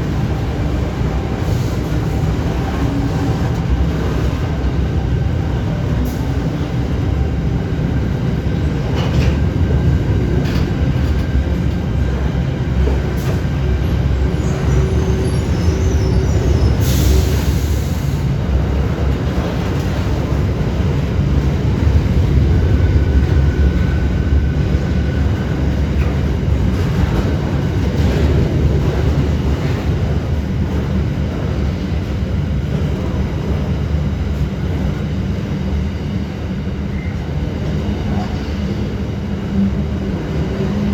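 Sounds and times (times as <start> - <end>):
freight train rumbling: 0.0 - 40.9
wheel squeal: 14.3 - 17.2
train hiss: 16.0 - 18.4.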